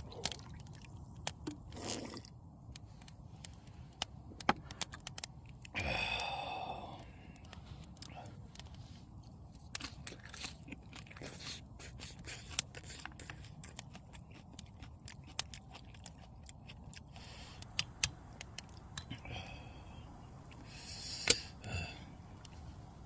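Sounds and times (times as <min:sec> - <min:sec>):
clicks and scraping: 0:02.7 - 0:05.7
crunchy biting and chewing: 0:07.3 - 0:19.2.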